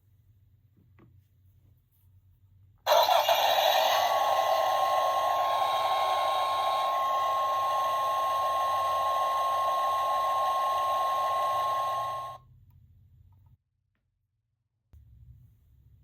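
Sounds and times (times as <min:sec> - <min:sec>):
toy speaker high tone: 0:02.9 - 0:12.4.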